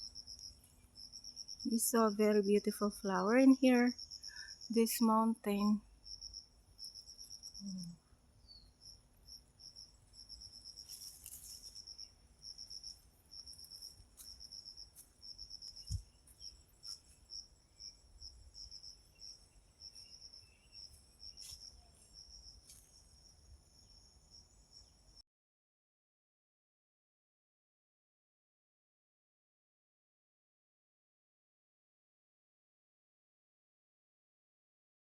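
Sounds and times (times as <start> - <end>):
insects chirping: 0.0 - 25.2.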